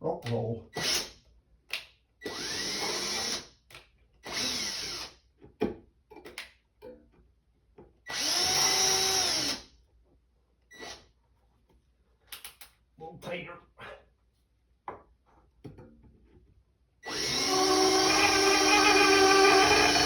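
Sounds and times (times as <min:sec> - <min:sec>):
power drill motor: 0:02.3 - 0:03.4, 0:04.3 - 0:05.1, 0:08.1 - 0:09.6, 0:17.0 - 0:20.0.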